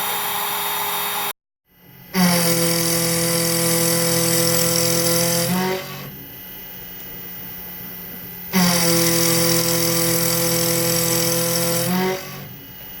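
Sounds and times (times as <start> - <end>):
machine tool cutting metal: 2.1 - 6.1, 8.5 - 12.5.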